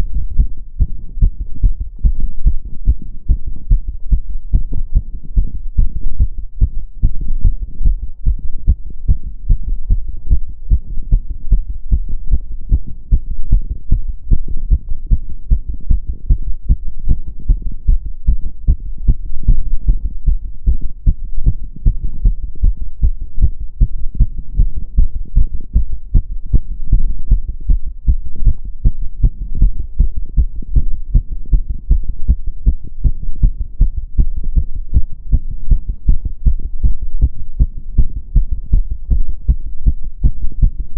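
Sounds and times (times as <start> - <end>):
fast heartbeat thuds: 0.0 - 40.9.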